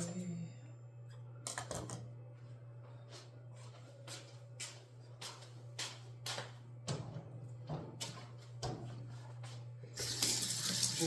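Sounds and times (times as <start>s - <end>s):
steady low hum: 0.0s - 10.8s
kitchen things knocking and clicking: 1.5s - 2.1s.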